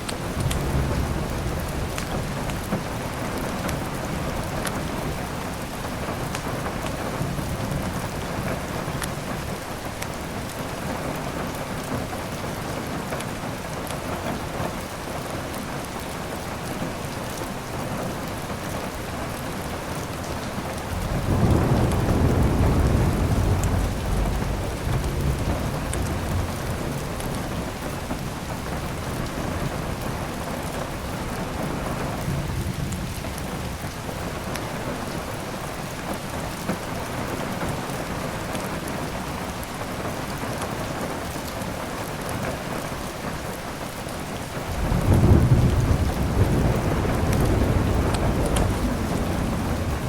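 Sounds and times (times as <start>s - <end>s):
heavy rain: 0.0s - 50.0s
thunder rumbling: 0.2s - 9.5s, 20.3s - 34.0s, 44.6s - 50.0s.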